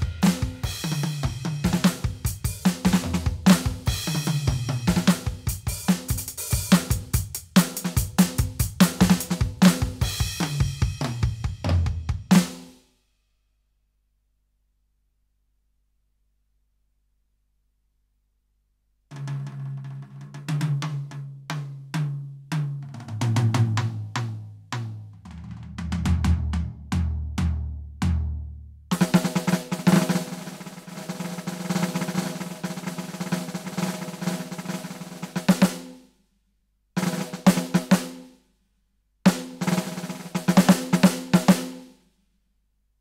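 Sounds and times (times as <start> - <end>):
fast snare roll: 0.0 - 12.7, 28.9 - 36.0, 37.0 - 38.3, 39.3 - 41.9
drum fill and beat: 0.0 - 12.8, 19.1 - 36.0, 37.0 - 38.3, 39.3 - 41.9.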